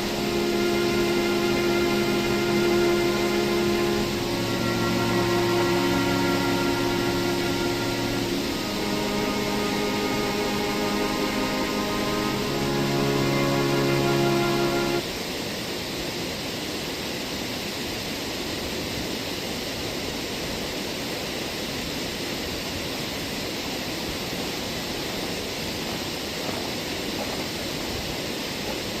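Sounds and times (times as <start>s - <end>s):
background music: 0.0s - 15.0s
waterfall rushing: 0.0s - 20.2s.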